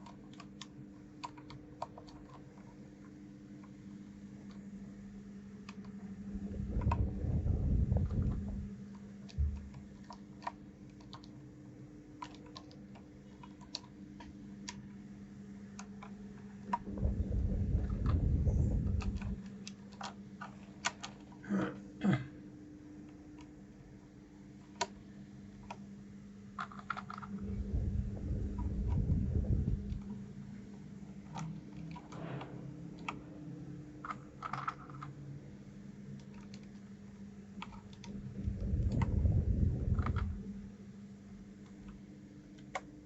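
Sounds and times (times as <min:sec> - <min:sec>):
keyboard keycaps clicking: 0:00.0 - 0:02.7, 0:09.2 - 0:11.4, 0:12.2 - 0:14.9
steady low hum: 0:00.0 - 0:43.0
low rumbling handling noise: 0:06.0 - 0:10.0, 0:16.4 - 0:19.6, 0:27.1 - 0:34.6, 0:37.6 - 0:41.7.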